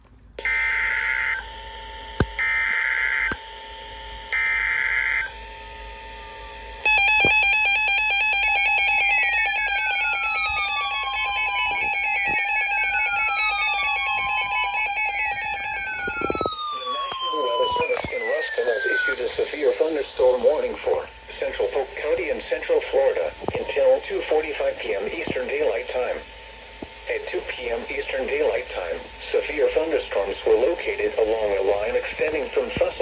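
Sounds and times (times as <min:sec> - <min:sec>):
steady tone: 0:04.9 - 0:23.1
warbling data tone bursts: 0:06.1 - 0:23.0
alert tone with falling sweeps: 0:06.9 - 0:20.8.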